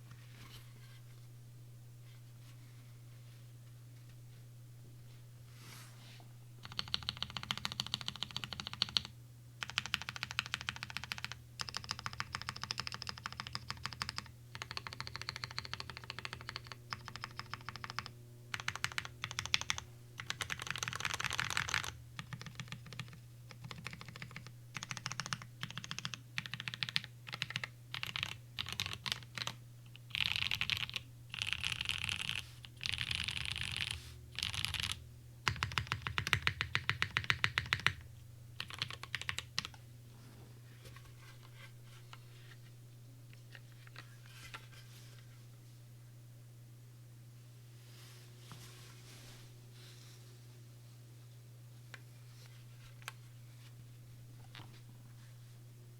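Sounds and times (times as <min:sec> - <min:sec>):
steady low hum: 0:31.0 - 0:55.9.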